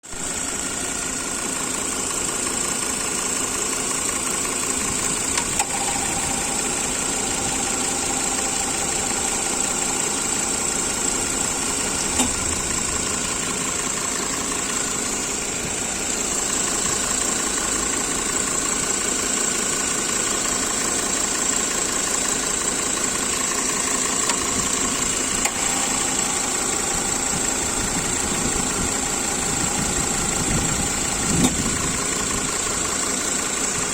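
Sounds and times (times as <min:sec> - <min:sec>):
car engine idling with knock: 0:00.1 - 0:33.9
sharp clicks: 0:25.3 - 0:26.2.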